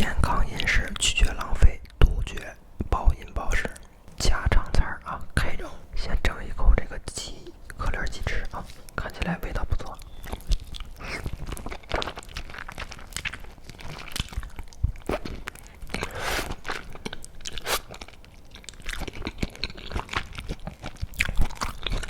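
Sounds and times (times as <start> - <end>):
chewing with wet smacks: 7.6 - 22.0.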